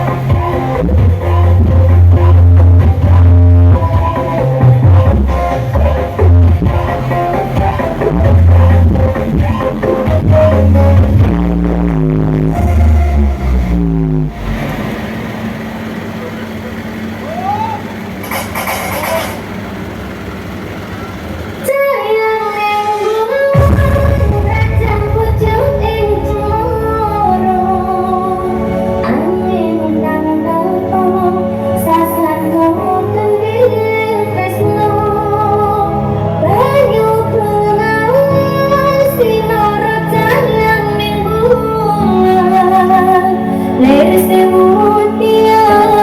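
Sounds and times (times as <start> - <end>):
woman singing: 0.0 - 11.4, 21.6 - 46.0
repeating bass line: 0.0 - 14.6, 23.6 - 31.2.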